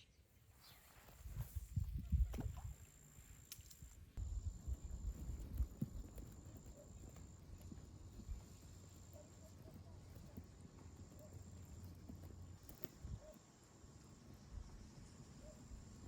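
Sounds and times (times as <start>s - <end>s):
low wind rumble: 4.2s - 6.6s.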